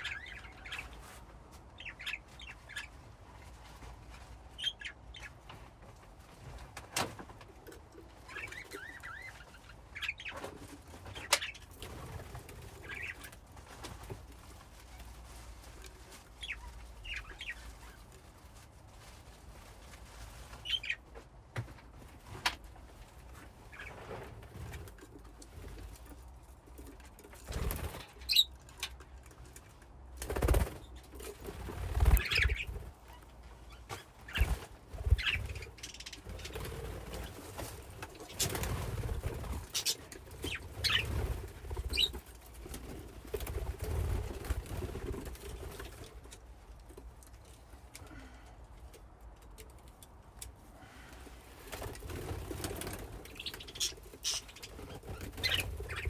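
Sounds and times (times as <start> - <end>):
budgies chirping: 0.0 - 1.0, 1.8 - 3.0, 8.3 - 11.9, 12.7 - 13.3, 16.4 - 18.0, 20.6 - 21.0, 27.9 - 28.5, 31.9 - 42.2, 53.2 - 56.0
wingbeats flurries: 31.6 - 32.9, 34.3 - 35.8.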